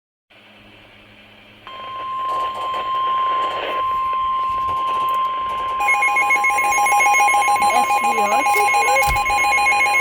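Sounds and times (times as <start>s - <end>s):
weather radio alarm tone: 1.7s - 10.0s
radio static hiss: 2.4s - 4.2s.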